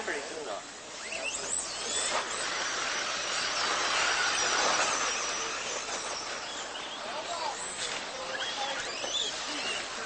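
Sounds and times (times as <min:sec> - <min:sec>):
electric motor and gear whine: 0:00.2 - 0:10.0.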